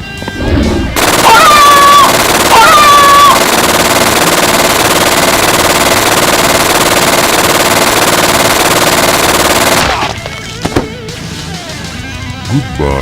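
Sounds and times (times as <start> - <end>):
rapid automatic gunfire: 1.0 - 10.9.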